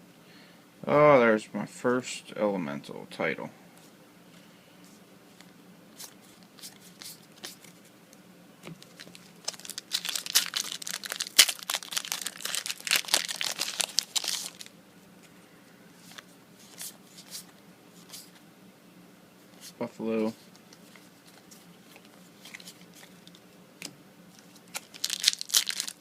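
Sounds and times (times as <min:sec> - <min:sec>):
card handling: 0:05.4 - 0:07.9, 0:08.6 - 0:14.7, 0:20.4 - 0:26.0
wrapper tearing and crinkling: 0:08.8 - 0:14.7, 0:24.4 - 0:26.0.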